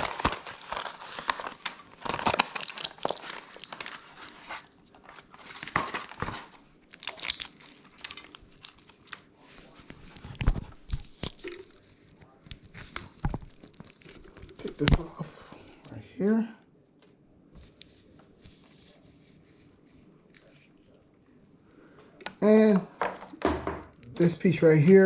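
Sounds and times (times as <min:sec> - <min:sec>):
packaging crinkling and rustling: 0:00.0 - 0:15.3.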